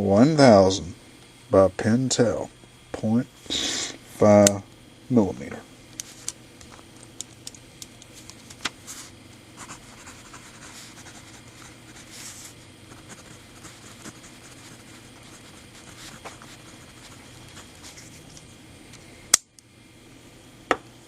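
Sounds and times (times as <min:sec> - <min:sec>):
pencil scratching on paper: 0:09.6 - 0:18.2.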